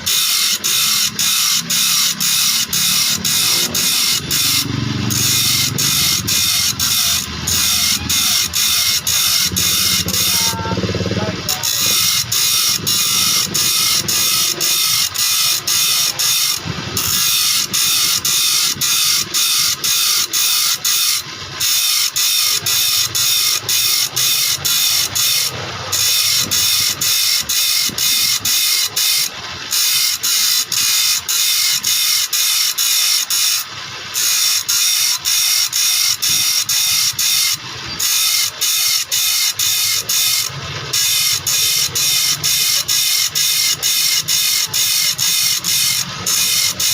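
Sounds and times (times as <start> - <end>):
file rasping saw teeth: 0.0 - 10.7, 11.5 - 46.9.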